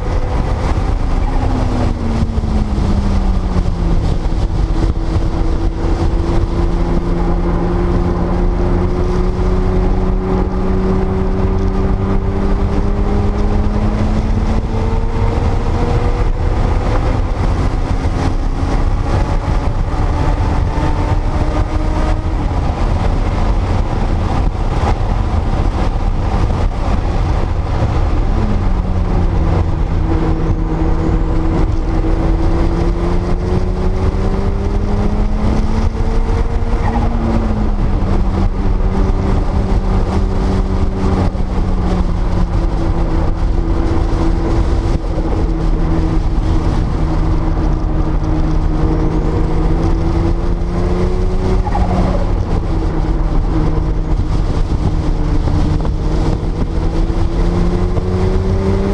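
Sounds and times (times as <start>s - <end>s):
wind and road noise: 0.0s - 58.9s.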